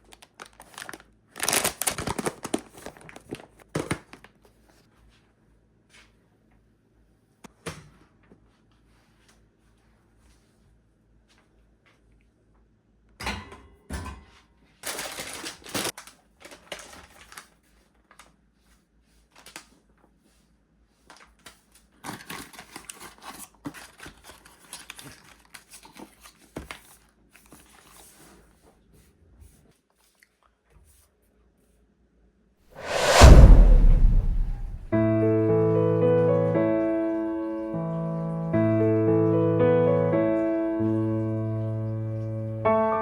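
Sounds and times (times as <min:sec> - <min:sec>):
packaging rustling and crinkling: 0:00.0 - 0:04.2, 0:14.8 - 0:17.5.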